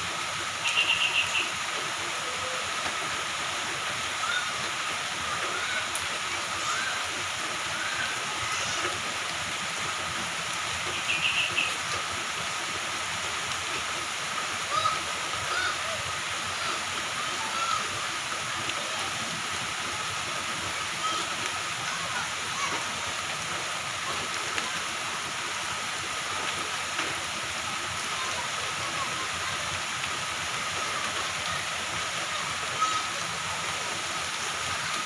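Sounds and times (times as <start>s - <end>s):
heavy rain falling: 0.0s - 35.0s.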